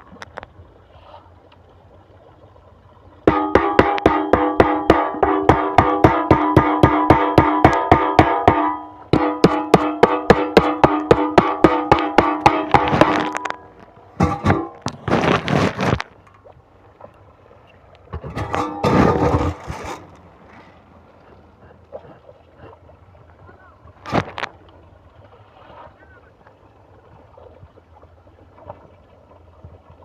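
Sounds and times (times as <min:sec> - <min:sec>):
plucked string music: 0:03.3 - 0:15.2, 0:18.2 - 0:20.1.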